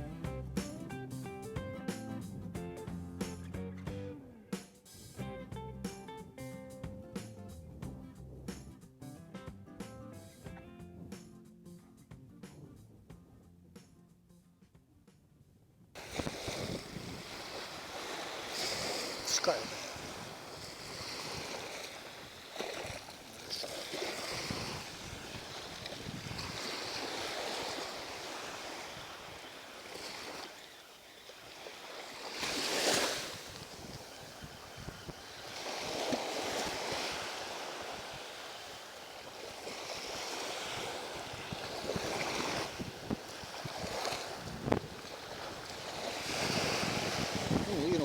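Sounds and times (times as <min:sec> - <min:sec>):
wind buffeting microphone: 0:16.0 - 0:30.8, 0:33.2 - 0:38.6, 0:40.0 - 0:48.0
sea waves washing in: 0:16.0 - 0:48.0.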